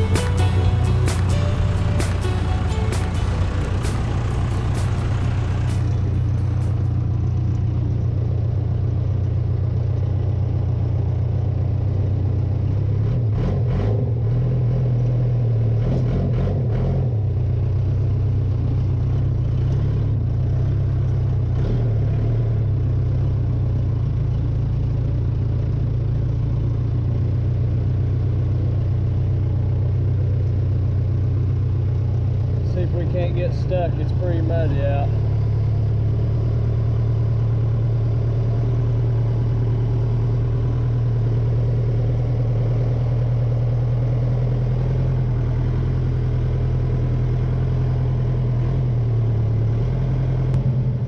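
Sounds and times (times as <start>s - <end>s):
backhoe diesel engine running: 0.0s - 11.5s, 24.0s - 48.4s.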